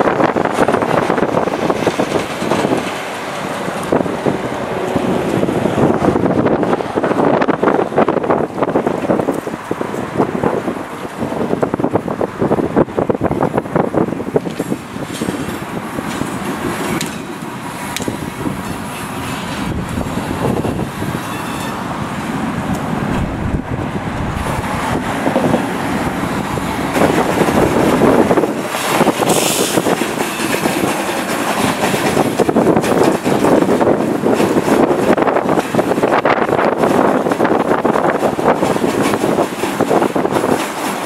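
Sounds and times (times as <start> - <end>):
freight train passing: 0.0 - 41.0
wheels clicking over rails: 24.3 - 41.0.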